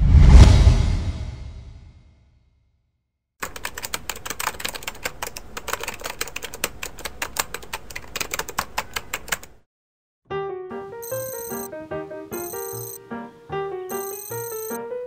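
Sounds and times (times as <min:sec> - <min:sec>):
fast keyboard typing: 0:03.4 - 0:09.6, 0:11.0 - 0:11.7, 0:12.4 - 0:13.0, 0:13.9 - 0:14.8
music: 0:10.3 - 0:15.0.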